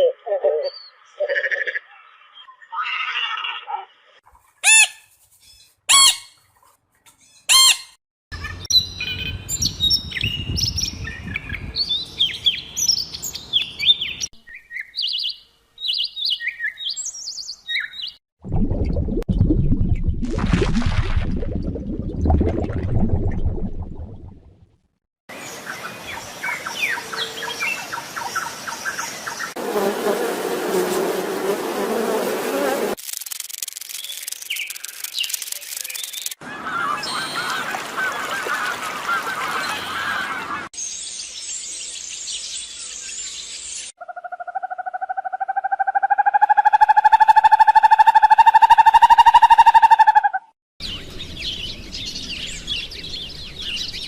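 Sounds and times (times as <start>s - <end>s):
small birds chirping: 8.4s - 18.2s, 33.1s - 37.6s, 50.8s - 54.0s
buzzing hum of insects: 29.6s - 36.3s
rapid insect ticking: 33.0s - 36.4s.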